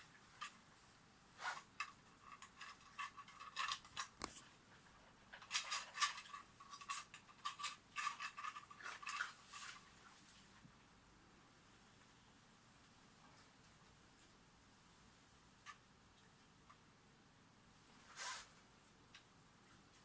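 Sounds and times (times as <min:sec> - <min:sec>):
plastic clicking and scraping: 0:01.4 - 0:04.5, 0:05.3 - 0:09.8.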